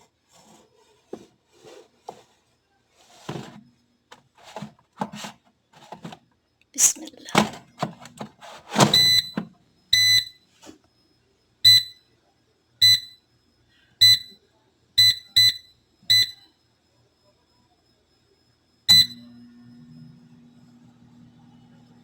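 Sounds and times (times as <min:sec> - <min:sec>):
short electronic beeps: 0:09.0 - 0:09.4, 0:10.0 - 0:10.4, 0:12.8 - 0:13.2, 0:15.0 - 0:16.4, 0:18.9 - 0:19.3
low steady hum: 0:18.9 - 0:22.0.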